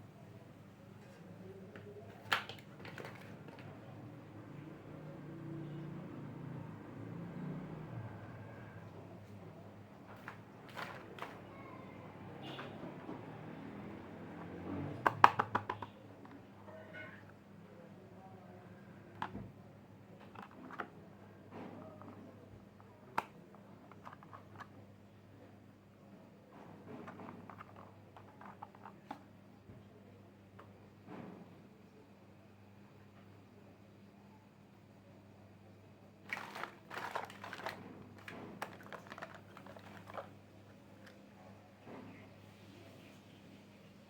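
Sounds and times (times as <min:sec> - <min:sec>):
plastic toy pieces clicking: 0:36.3 - 0:40.3.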